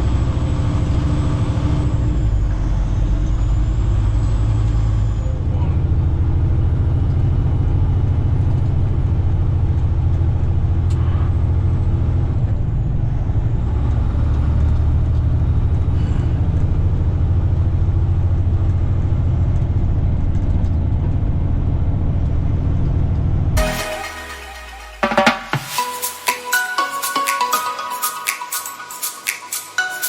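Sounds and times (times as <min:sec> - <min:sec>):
diesel truck engine droning: 0:00.0 - 0:23.6.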